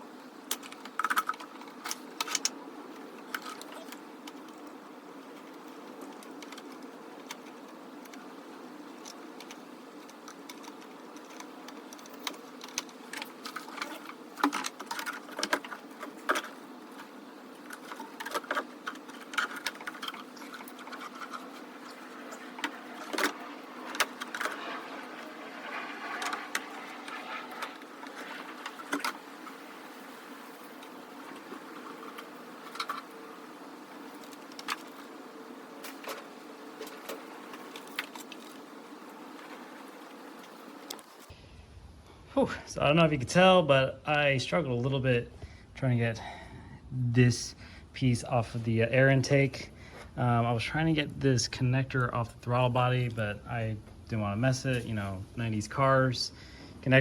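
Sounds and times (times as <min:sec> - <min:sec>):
steady low hum: 0:00.0 - 0:57.0
plastic and metal parts rattling: 0:00.5 - 0:04.6, 0:09.0 - 0:29.3.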